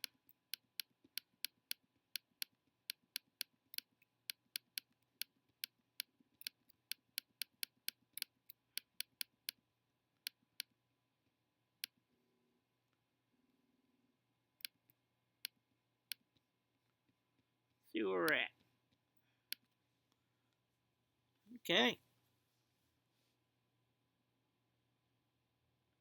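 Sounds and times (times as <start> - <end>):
computer mouse clicking: 0.0 - 9.6.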